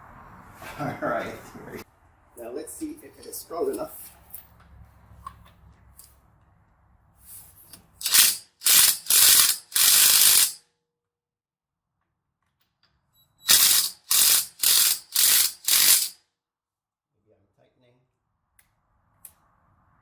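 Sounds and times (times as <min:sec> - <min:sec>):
impact wrench hammering: 0:08.0 - 0:10.6, 0:13.5 - 0:16.2.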